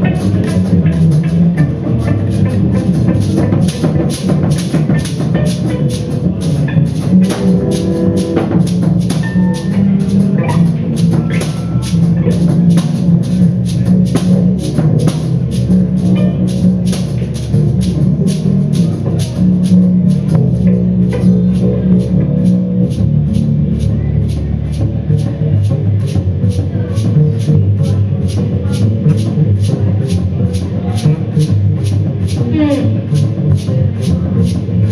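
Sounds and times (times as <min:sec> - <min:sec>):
high ticking: 0:00.0 - 0:25.3
low held notes: 0:00.0 - 0:34.9
percussion steady pulse: 0:00.0 - 0:34.9.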